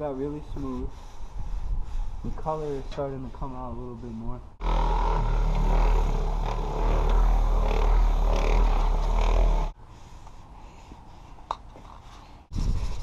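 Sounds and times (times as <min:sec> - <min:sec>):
electric polisher whirring: 0:04.6 - 0:09.8.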